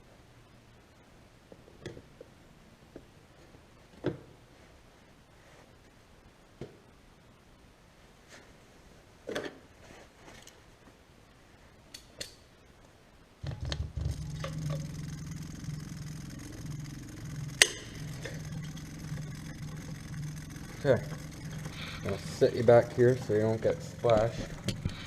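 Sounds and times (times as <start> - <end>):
low mechanical hum: 13.4 - 25.0.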